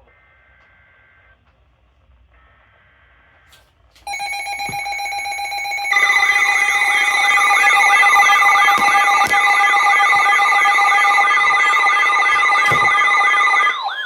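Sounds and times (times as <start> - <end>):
loud electronic alarm tone: 4.1 - 14.0
warbling siren-like tone: 4.1 - 14.0.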